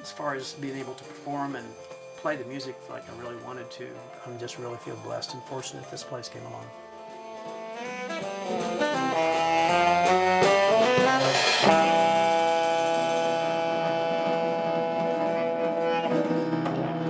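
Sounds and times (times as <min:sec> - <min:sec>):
small jazz band playing: 0:00.0 - 0:17.0
cymbal crash: 0:07.8 - 0:14.5.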